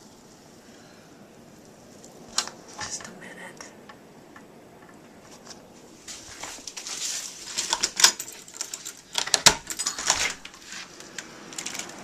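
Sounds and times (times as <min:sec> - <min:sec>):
clicks and knocks: 0:07.5 - 0:12.0.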